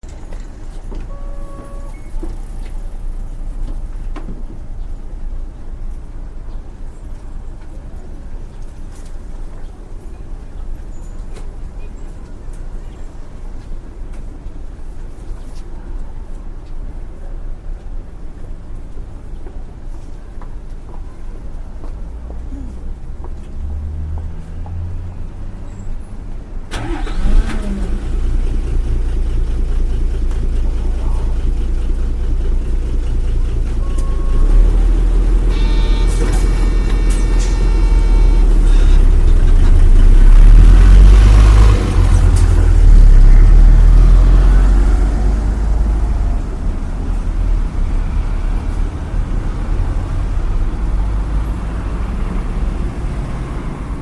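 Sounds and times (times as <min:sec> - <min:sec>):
bus engine rumbling: 0:00.0 - 0:54.0
high-pitched signal: 0:33.8 - 0:39.4.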